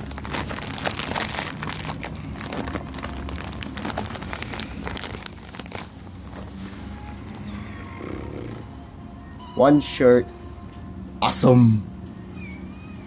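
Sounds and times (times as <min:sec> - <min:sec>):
packaging crinkling and rustling: 0:00.0 - 0:07.5.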